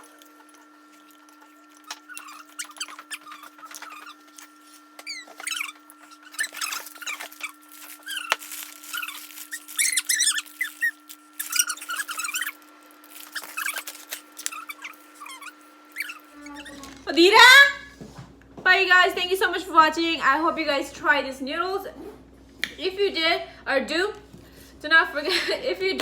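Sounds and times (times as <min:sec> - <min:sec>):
noodle slurping: 0:00.0 - 0:12.5.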